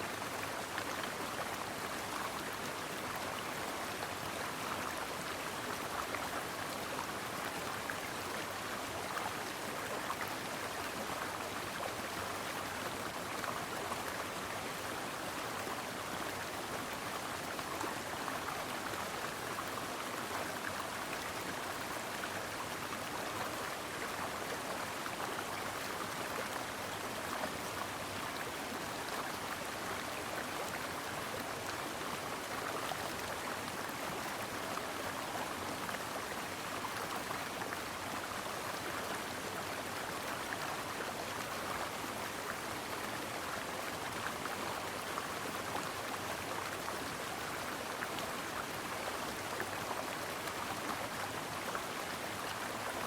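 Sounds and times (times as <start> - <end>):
stream flowing over rocks: 0.0 - 53.0.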